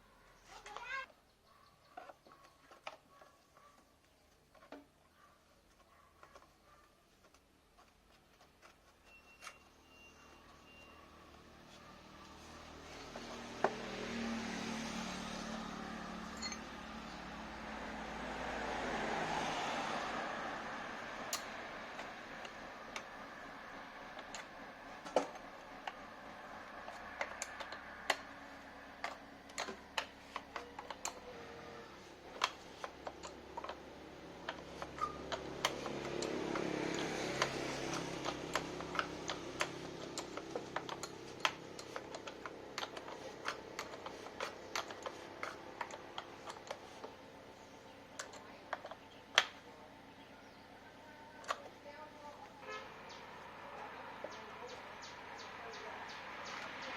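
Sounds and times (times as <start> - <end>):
small parts and tools clicking: 16.0 - 17.2, 21.0 - 49.8.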